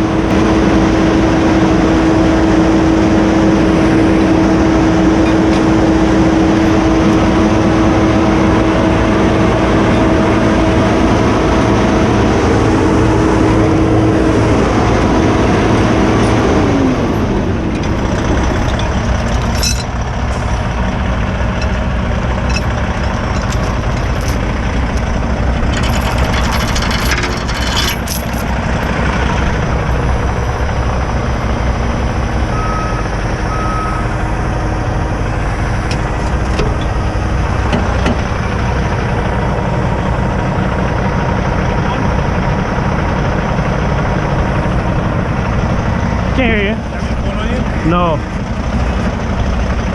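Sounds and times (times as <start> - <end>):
diesel truck engine revving: 0.0 - 49.9
metallic clanks: 17.8 - 29.6.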